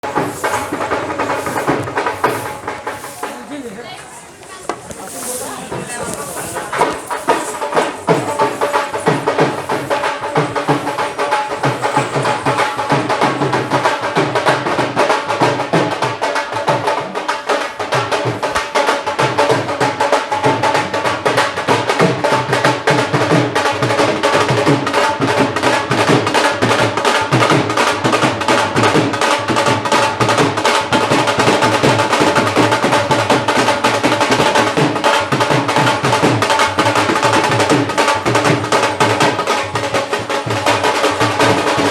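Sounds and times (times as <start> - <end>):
dhol drumming: 0.0 - 41.9.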